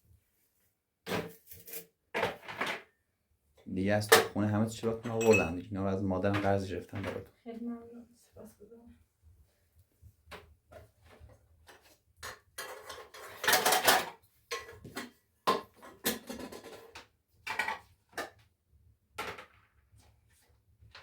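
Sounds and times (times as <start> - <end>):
dishes and pans clattering: 5.0 - 5.6, 11.8 - 18.4.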